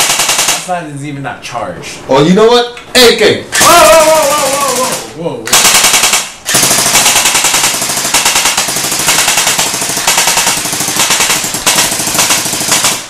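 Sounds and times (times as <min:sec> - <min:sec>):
airsoft rifle firing full auto: 0:00.0 - 0:00.6, 0:03.6 - 0:13.0.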